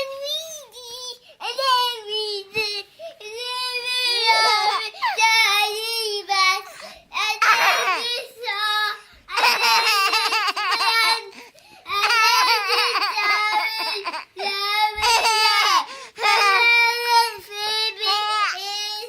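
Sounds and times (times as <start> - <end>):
baby crying and squealing: 4.1 - 5.2.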